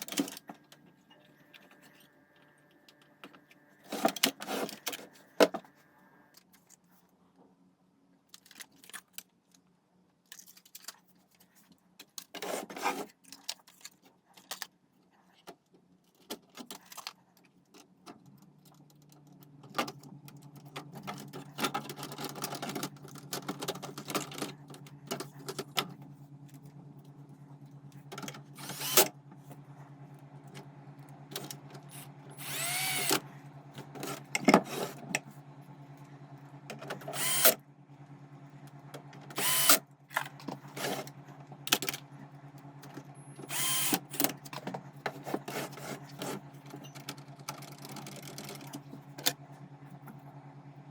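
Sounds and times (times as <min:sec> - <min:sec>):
steady low hum: 0:00.0 - 0:08.0, 0:18.3 - 0:50.9
small motor whirring: 0:28.4 - 0:29.8, 0:31.3 - 0:36.0, 0:36.8 - 0:37.6, 0:39.2 - 0:41.2, 0:43.1 - 0:44.5.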